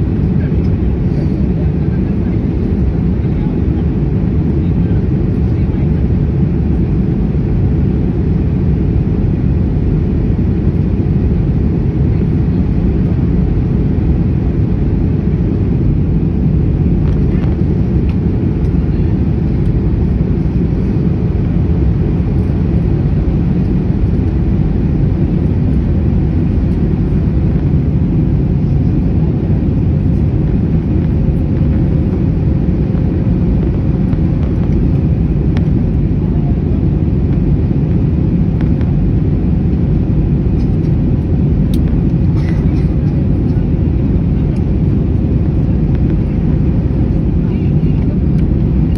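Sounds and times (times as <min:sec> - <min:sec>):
jet engines and airflow rumble: 0:00.0 - 0:48.9.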